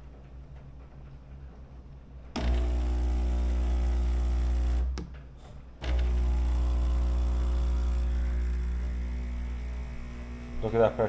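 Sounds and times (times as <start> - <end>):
espresso machine pump buzzing: 2.4 - 5.0, 5.8 - 11.0.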